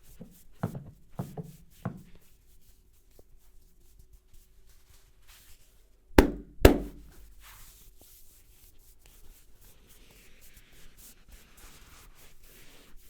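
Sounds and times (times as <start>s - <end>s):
hand strikes on head: 6.2s - 7.3s.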